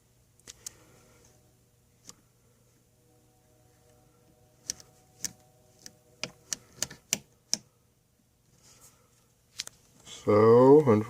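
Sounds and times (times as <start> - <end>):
faint steady hum: 0.0 - 11.0
switches and knobs clicking: 4.6 - 7.7.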